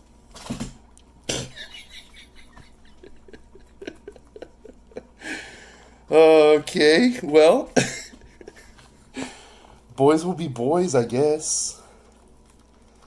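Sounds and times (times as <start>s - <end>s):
man laughing coughing: 1.3s - 5.2s, 7.8s - 9.3s
breathy rush: 5.1s - 6.2s
small clicks and rustles: 11.9s - 13.0s.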